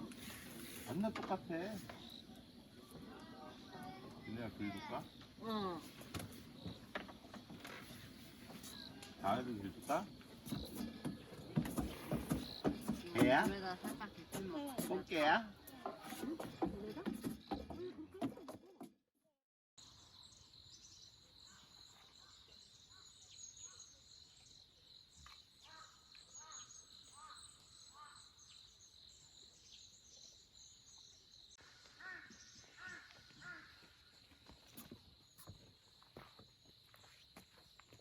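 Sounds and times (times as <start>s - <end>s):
bird calls: 20.9s - 35.6s.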